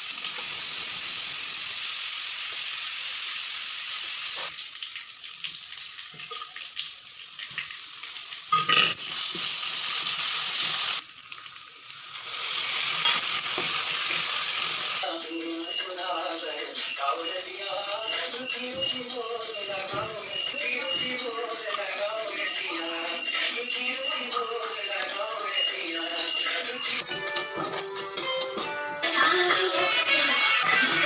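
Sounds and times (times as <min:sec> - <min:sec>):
kitchen tap running: 0:00.0 - 0:15.0.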